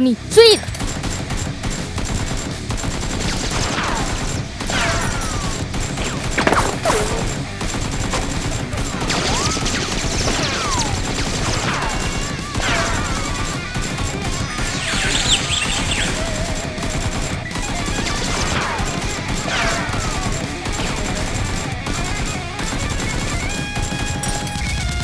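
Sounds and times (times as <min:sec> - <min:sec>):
rapid gunfire: 0:00.6 - 0:25.0.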